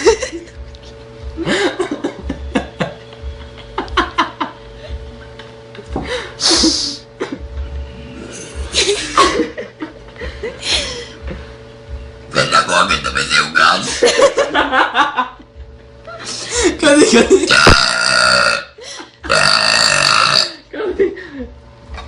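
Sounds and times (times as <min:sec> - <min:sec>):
people laughing: 0:00.0 - 0:00.6, 0:01.4 - 0:05.0, 0:06.0 - 0:07.4, 0:08.7 - 0:11.2, 0:13.8 - 0:17.5, 0:20.7 - 0:21.6.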